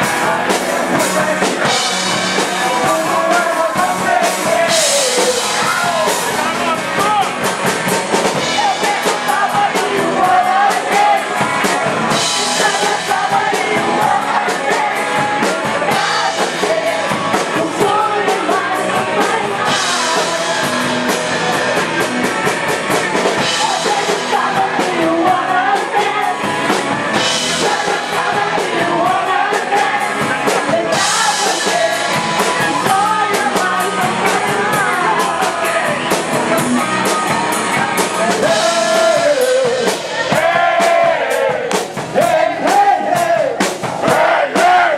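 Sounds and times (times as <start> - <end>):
person singing: 0.0 - 7.4, 8.2 - 21.9, 23.2 - 41.5
rock band playing live: 0.0 - 44.9.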